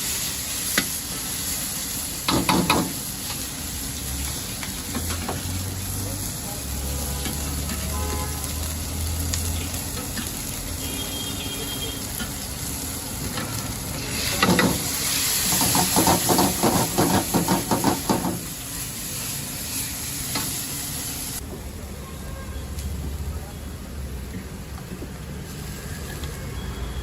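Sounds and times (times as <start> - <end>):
food sizzling in a pan: 0.0 - 21.4.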